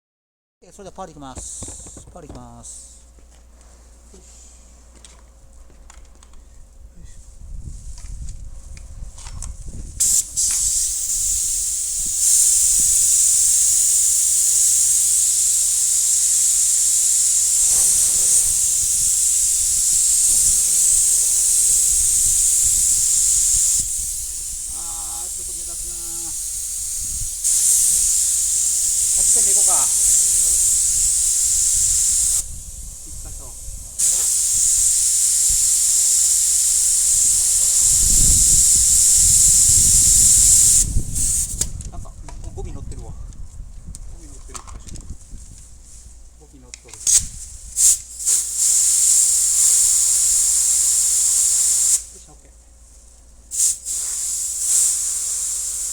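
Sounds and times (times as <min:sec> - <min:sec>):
paint spray gun hissing: 0:01.0 - 0:03.1, 0:10.0 - 0:41.8, 0:47.0 - 0:52.3, 0:53.5 - 0:55.9.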